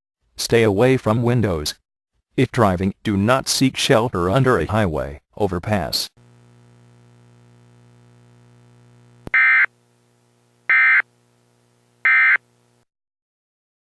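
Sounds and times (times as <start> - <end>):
faint steady hum: 3.9 - 12.9
harsh digital tone bursts: 9.3 - 9.7, 10.7 - 11.0.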